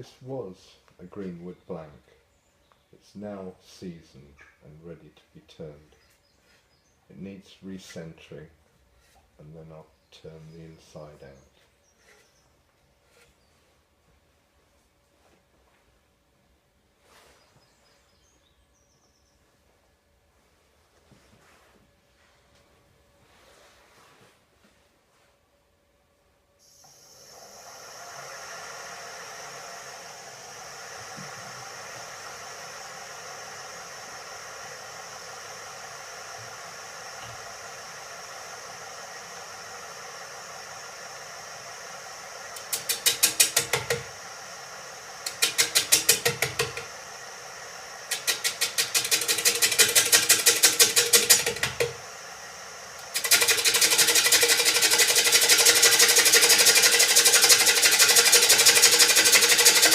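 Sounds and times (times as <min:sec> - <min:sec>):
wood lathe motor running: 0:26.6 - 0:59.9
gouge knocking on spinning wood: 0:42.6 - 0:44.1, 0:45.3 - 0:46.9.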